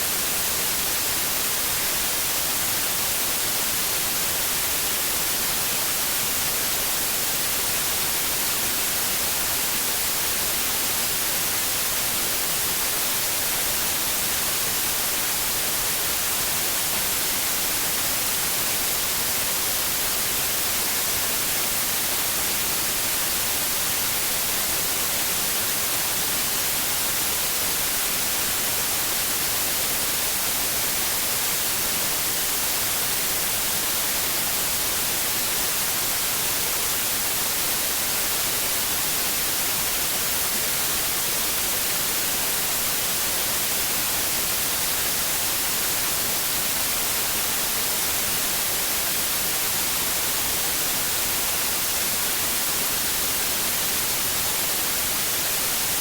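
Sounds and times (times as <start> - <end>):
white noise hiss: 0.0 - 56.0.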